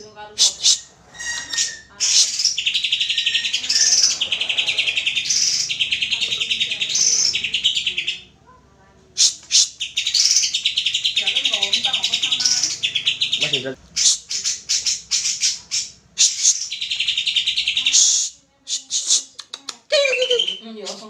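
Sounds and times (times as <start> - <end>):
sharp bird calls: 0.0 - 8.3, 9.2 - 19.3, 20.0 - 21.0
bird singing high trills: 0.7 - 8.2.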